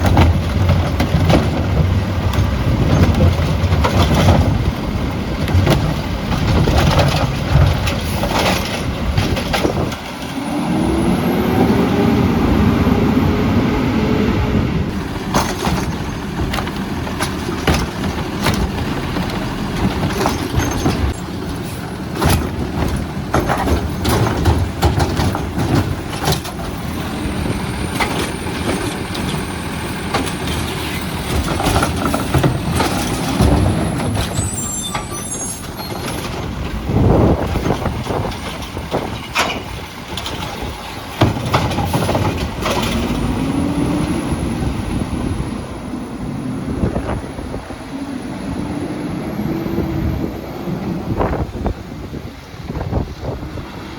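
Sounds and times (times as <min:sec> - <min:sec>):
garbage truck engine revving: 0:00.0 - 0:52.2
carts clanking and banging: 0:00.0 - 0:53.8.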